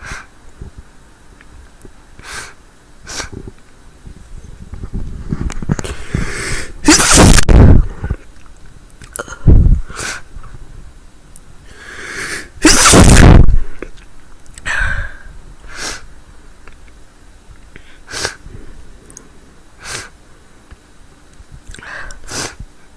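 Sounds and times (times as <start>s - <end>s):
loud burst of breath: 0.0s - 0.4s, 2.2s - 3.4s, 5.8s - 7.4s, 9.8s - 10.3s, 11.6s - 13.4s, 14.6s - 16.1s, 17.8s - 18.8s, 19.8s - 20.2s, 21.8s - 22.7s
breathy in-breath: 5.8s - 6.8s, 11.6s - 12.6s, 14.6s - 16.1s, 21.7s - 22.6s
woman sneezing: 6.8s - 7.4s, 12.6s - 13.4s.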